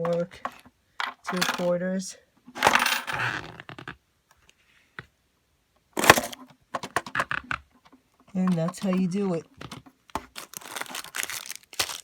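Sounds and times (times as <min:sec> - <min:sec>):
plastic parts and coins clattering: 0:00.0 - 0:01.8, 0:02.5 - 0:03.9, 0:06.0 - 0:12.0.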